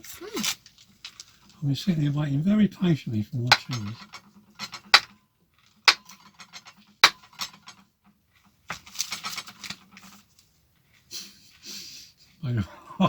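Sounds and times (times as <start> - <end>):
cutlery and crockery clinking: 3.5 - 5.1, 5.9 - 7.8
dishes rattling and clattering: 3.5 - 5.2, 5.8 - 10.2.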